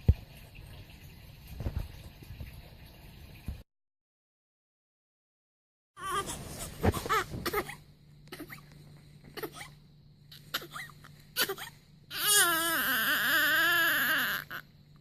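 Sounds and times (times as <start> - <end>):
newborn baby fussing and crying: 6.0 - 14.7.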